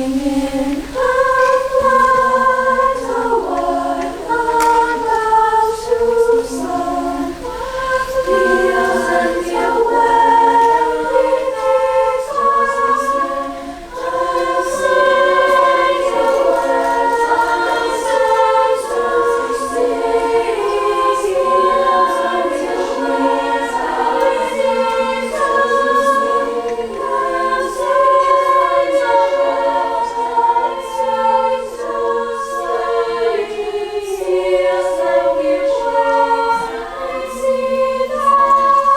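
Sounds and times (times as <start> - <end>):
choir singing a cappella: 0.0 - 38.9.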